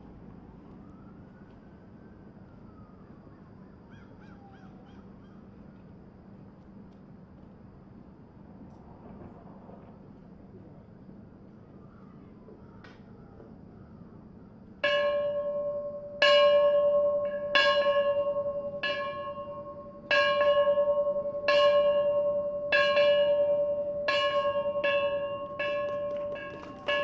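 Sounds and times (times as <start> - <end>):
ceremonial bell ringing: 14.8 - 27.0.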